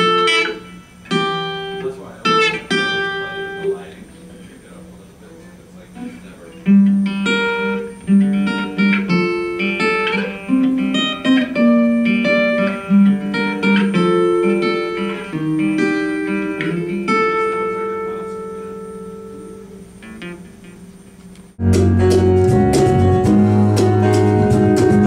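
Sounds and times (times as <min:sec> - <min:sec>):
acoustic guitar picking: 0:00.0 - 0:25.0.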